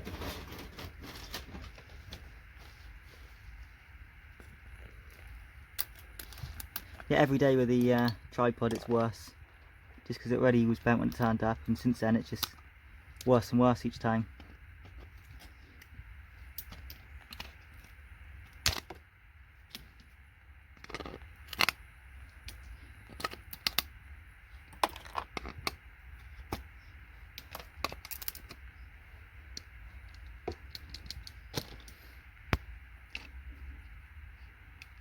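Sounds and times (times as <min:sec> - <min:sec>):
components cracking off circuit boards: 0:16.5 - 0:19.0, 0:20.8 - 0:24.0, 0:24.7 - 0:25.8, 0:27.3 - 0:28.6.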